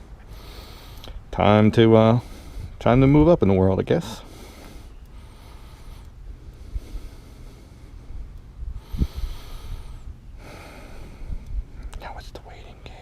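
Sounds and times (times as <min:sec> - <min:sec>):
person breathing: 0:00.2 - 0:01.3, 0:02.2 - 0:02.8, 0:04.2 - 0:11.8
noisy exhales: 0:04.2 - 0:11.6.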